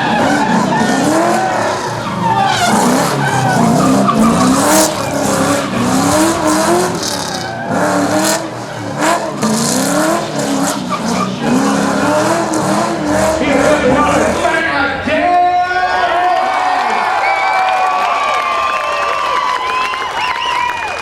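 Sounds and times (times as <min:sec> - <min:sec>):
car engine revving hard: 0:00.0 - 0:15.0
tyres skidding and squealing: 0:00.0 - 0:16.2.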